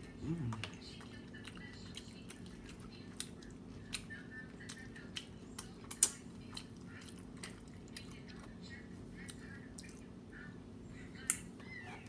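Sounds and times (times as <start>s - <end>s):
person chewing food: 0.0s - 8.6s.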